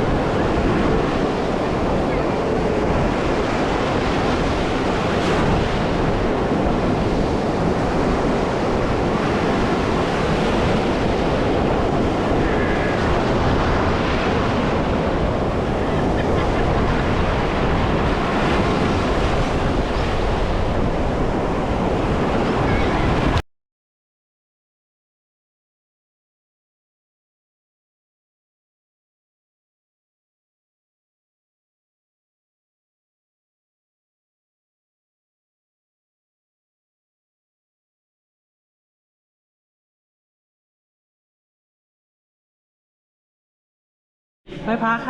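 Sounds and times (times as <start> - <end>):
sea surf washing onto beach: 0.0 - 23.4
wind buffeting microphone: 0.0 - 23.4.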